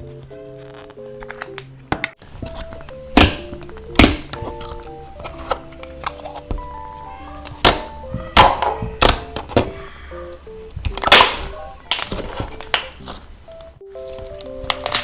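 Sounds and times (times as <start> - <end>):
soft plucked background music: 0.0 - 15.0
slime popping and clicking: 2.8 - 4.9, 10.8 - 13.7, 14.3 - 15.0.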